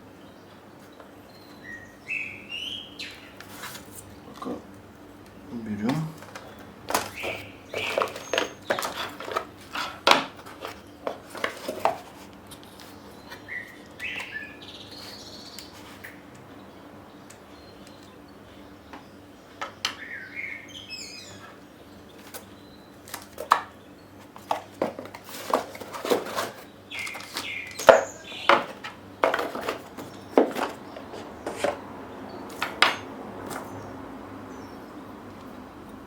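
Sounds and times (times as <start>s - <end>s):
faint bird chirps: 13.1s - 23.0s.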